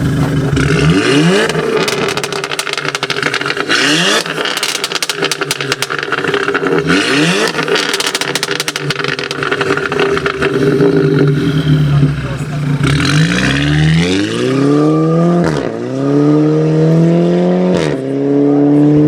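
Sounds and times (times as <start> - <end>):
exhaust crackles and pops: 0.0 - 14.6
car engine revving: 0.0 - 19.0.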